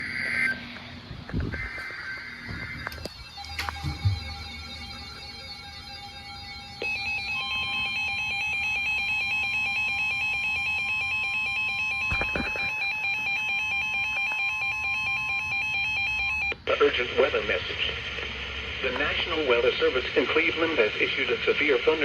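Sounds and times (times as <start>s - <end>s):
electronic alert tone with warble: 1.4s - 14.2s.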